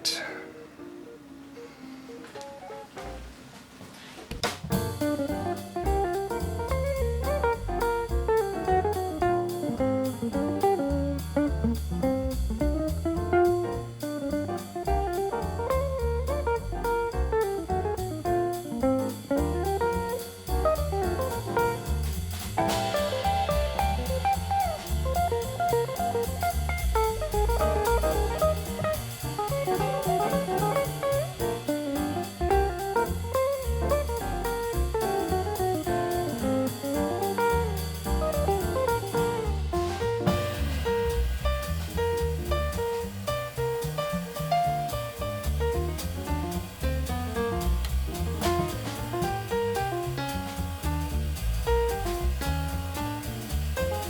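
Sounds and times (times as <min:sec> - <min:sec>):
drums: 0:01.5 - 0:54.0
instrumental music with guitar: 0:04.7 - 0:22.0, 0:22.6 - 0:40.8.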